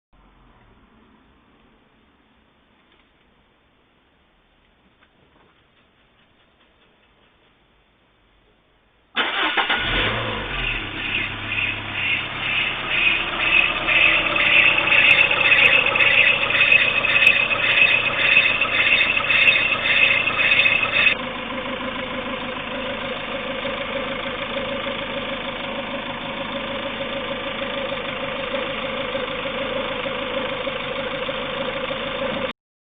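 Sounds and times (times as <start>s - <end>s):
engine starting: 9.2s - 21.2s
engine idling with rhythmic pulsing: 9.2s - 32.5s.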